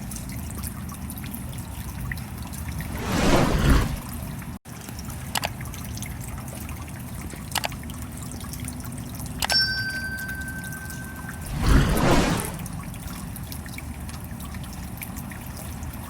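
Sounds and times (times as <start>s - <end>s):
rain trickling and dripping: 0.0s - 2.9s, 4.2s - 9.6s, 12.6s - 16.0s.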